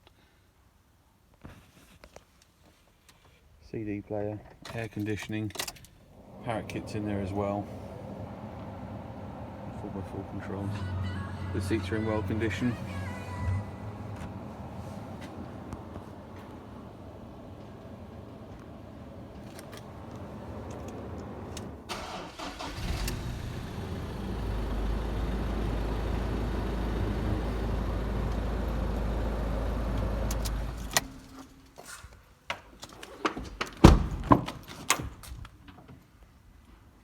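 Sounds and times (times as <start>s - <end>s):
diesel engine cranking and starting: 6.0s - 31.6s
diesel engine idling: 6.1s - 31.3s.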